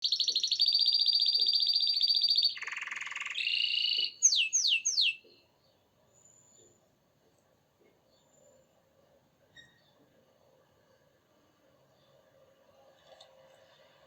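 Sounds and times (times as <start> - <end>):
canary singing trills: 0.0 - 5.5.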